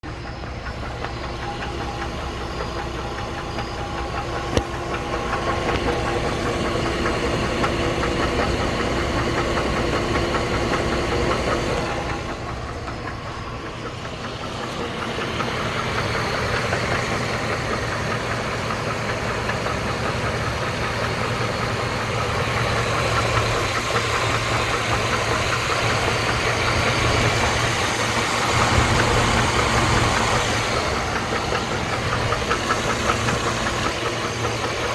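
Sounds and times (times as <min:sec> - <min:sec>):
engine running with fast knocking: 0:00.0 - 0:34.9.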